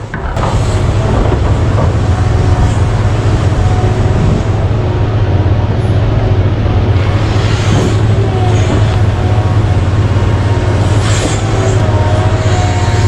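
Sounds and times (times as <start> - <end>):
deep diesel machinery engine drone: 0.0 - 13.0.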